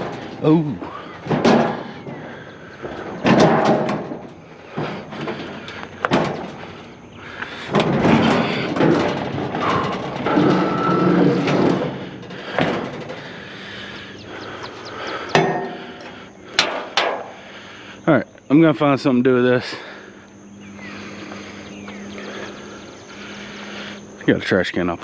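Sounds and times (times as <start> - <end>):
metal scrap clanking and scraping: 0.0 - 17.4
ringing metal scrape: 15.4 - 16.2.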